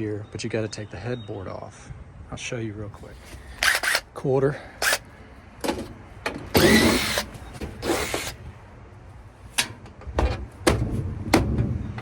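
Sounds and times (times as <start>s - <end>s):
power drill backing out screws: 3.2s - 4.0s, 4.8s - 5.0s, 5.7s - 8.4s.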